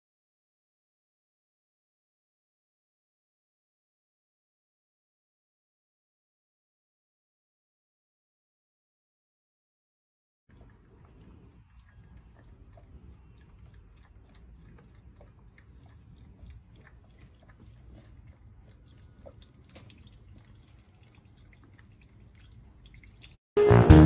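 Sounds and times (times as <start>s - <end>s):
crunchy chewing: 10.5s - 23.4s.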